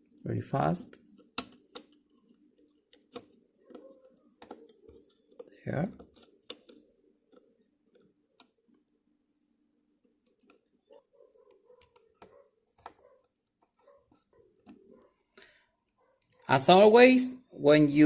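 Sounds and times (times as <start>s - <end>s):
plastic parts clicking and tapping: 0.9s - 9.0s, 10.0s - 15.5s.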